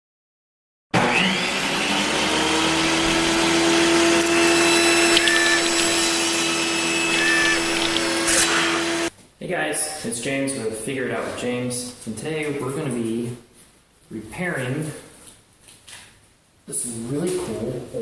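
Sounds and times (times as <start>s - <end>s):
motor-driven machine running: 1.0s - 9.1s.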